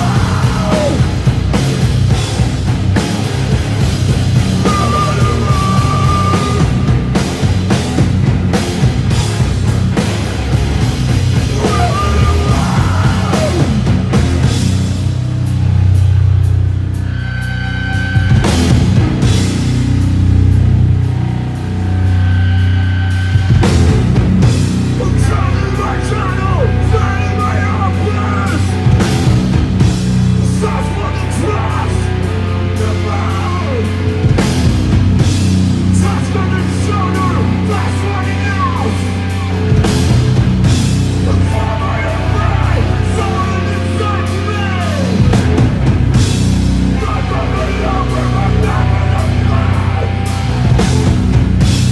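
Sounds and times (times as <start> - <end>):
bass guitar: 0.0 - 51.9
distorted electric guitars: 0.0 - 51.9
driving drum kit: 0.0 - 51.9
live rock band playing: 0.0 - 51.9.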